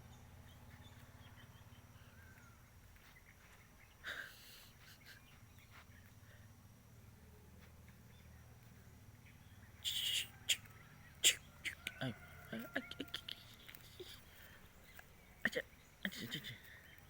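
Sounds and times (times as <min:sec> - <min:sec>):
steady low hum: 0:00.0 - 0:17.0
faint ticks: 0:11.6 - 0:17.0.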